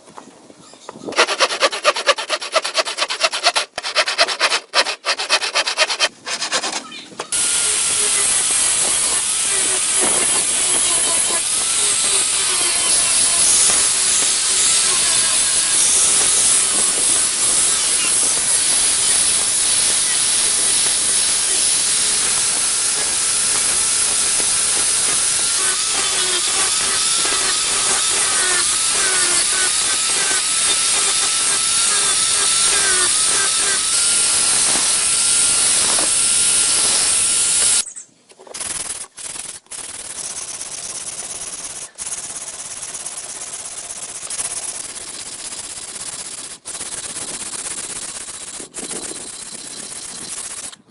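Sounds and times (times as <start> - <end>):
power tool grinding: 1.1 - 37.9.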